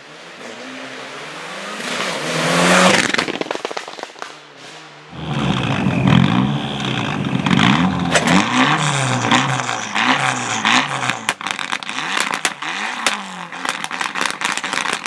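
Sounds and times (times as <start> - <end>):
rally car engine revving: 0.0 - 3.5, 4.5 - 15.0
exhaust pops and cracks: 2.8 - 4.4, 5.2 - 15.0.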